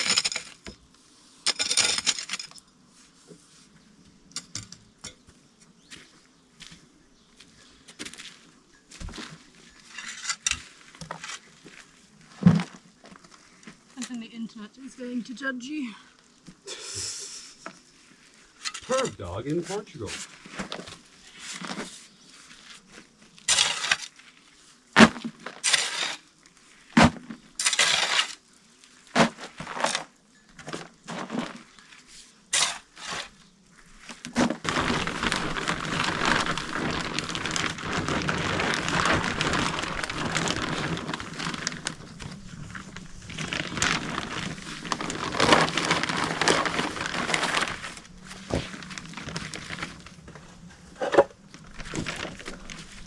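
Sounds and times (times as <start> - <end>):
crunching scraping noise: 0.0 - 0.9, 9.0 - 14.4, 18.1 - 53.0.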